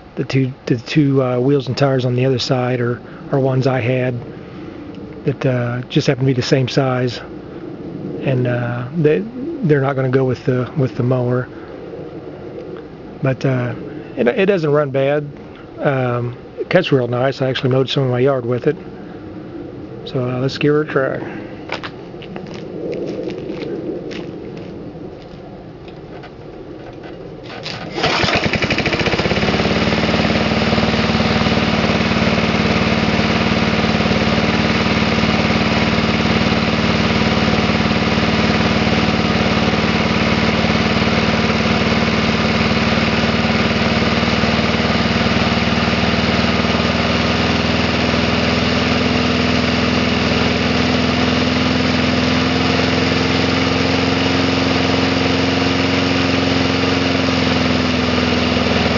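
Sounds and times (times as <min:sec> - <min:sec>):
lawn mower engine starting and running: 0:27.4 - 0:58.9.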